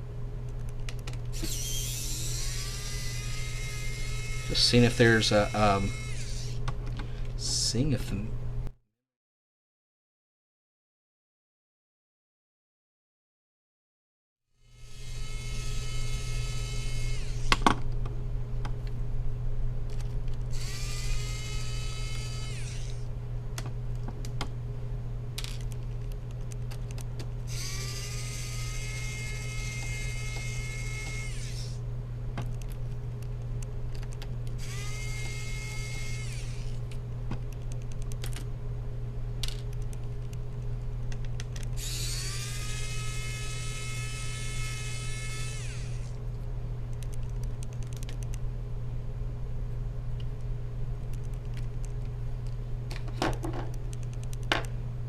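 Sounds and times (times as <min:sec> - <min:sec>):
steady low hum: 0:00.0 - 0:08.8, 0:14.6 - 0:55.0
electric screwdriver motor whine: 0:01.3 - 0:06.6, 0:14.7 - 0:17.7, 0:20.5 - 0:23.0, 0:27.5 - 0:31.8, 0:34.6 - 0:36.8, 0:41.8 - 0:46.2
small clicks: 0:46.9 - 0:48.4.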